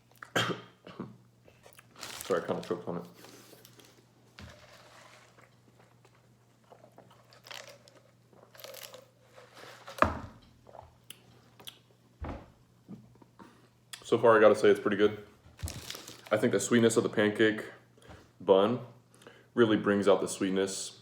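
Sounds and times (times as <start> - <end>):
chewing and crunching food: 1.5 - 11.9.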